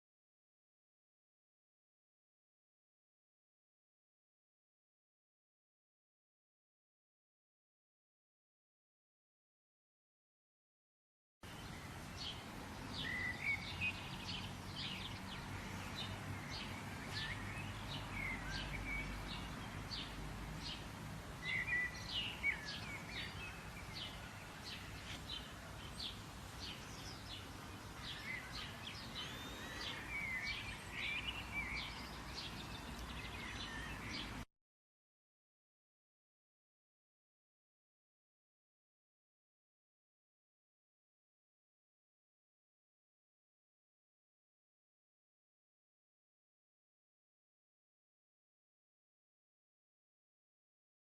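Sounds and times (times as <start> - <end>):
birds chirping: 11.4 - 34.4.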